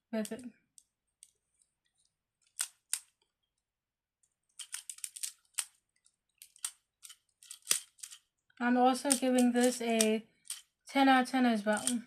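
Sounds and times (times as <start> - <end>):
fidget toy plastic clicks: 2.4 - 3.3, 4.5 - 10.8, 11.6 - 12.0.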